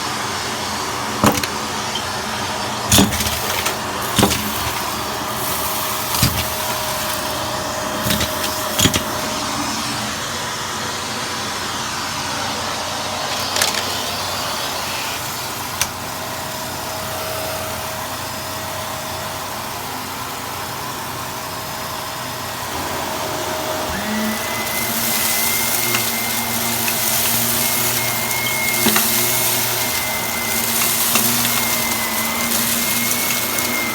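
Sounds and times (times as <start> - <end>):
vacuum cleaner running: 0.0 - 33.9
debris cracking and popping: 2.9 - 9.5, 24.4 - 33.9.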